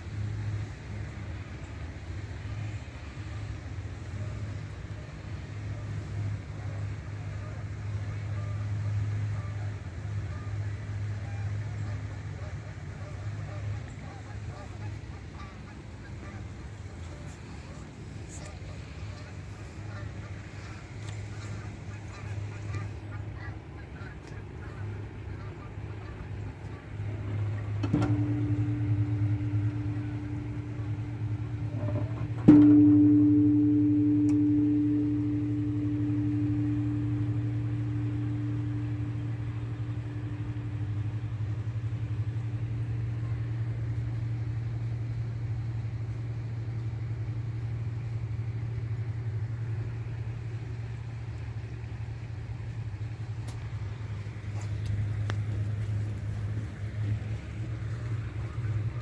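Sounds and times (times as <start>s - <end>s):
steady low hum: 0.0s - 59.0s
large bell ringing: 27.3s - 51.4s, 52.0s - 59.0s.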